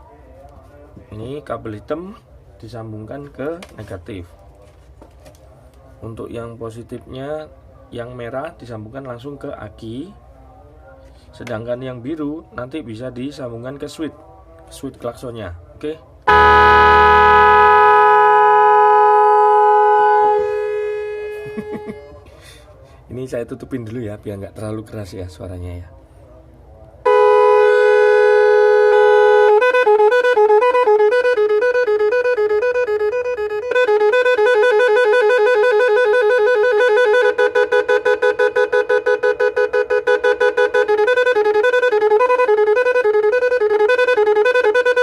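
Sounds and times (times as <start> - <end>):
electric horn blast: 16.3 - 22.2, 27.1 - 45.0.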